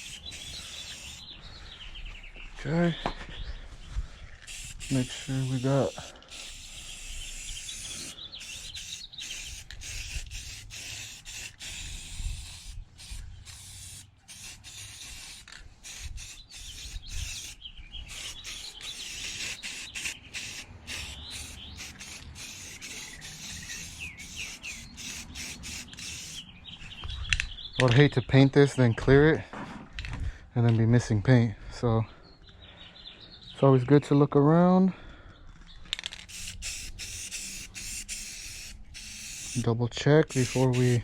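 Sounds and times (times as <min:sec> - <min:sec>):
spray paint hissing: 0:00.0 - 0:01.3, 0:04.4 - 0:26.5, 0:36.2 - 0:41.0
birds chirping: 0:00.0 - 0:10.0, 0:12.7 - 0:29.5, 0:31.8 - 0:37.8.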